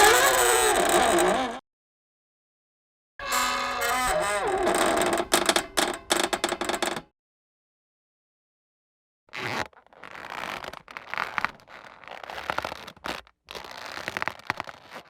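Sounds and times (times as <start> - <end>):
scratchy creaking squeaks: 0.0 - 1.6, 3.2 - 7.0, 9.3 - 15.0.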